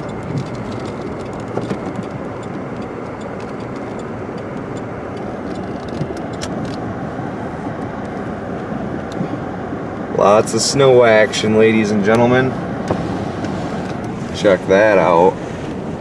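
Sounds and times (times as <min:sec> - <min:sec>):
car road and engine noise: 0:00.0 - 0:16.0.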